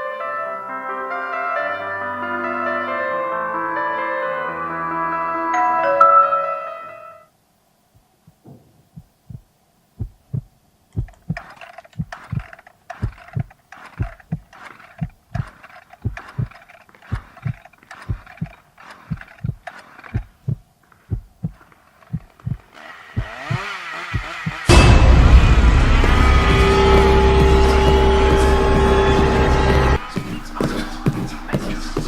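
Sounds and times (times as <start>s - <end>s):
low thumps: 8.3s - 11.4s, 23.2s - 30.2s
rising noise: 24.6s - 30.2s.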